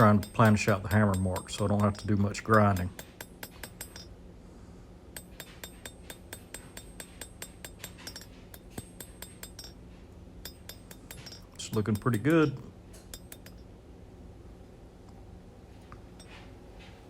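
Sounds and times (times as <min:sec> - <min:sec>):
hammer ringing on steel blade: 0:00.0 - 0:04.2, 0:05.2 - 0:09.8, 0:10.4 - 0:13.7.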